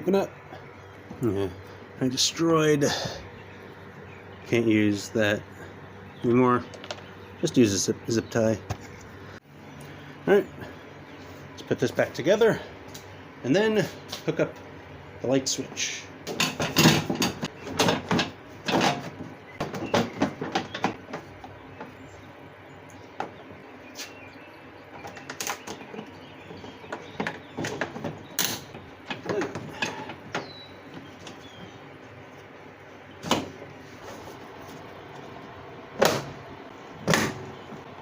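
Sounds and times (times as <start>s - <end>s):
knocks and clunks of mower parts: 16.2s - 22.0s, 23.1s - 23.5s, 24.8s - 31.8s, 33.2s - 38.0s.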